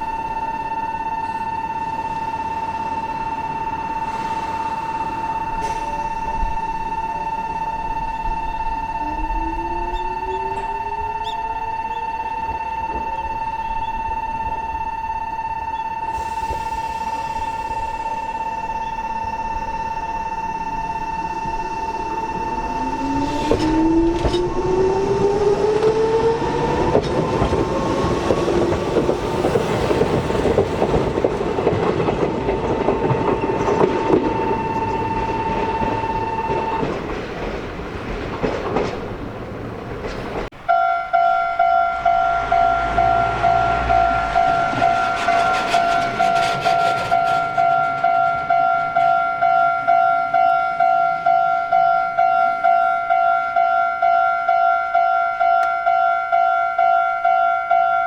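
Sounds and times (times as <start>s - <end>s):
level crossing warning bell: 0.0s - 38.4s, 40.5s - 58.0s
train wheels rumbling and clattering: 15.8s - 40.7s, 41.9s - 50.6s.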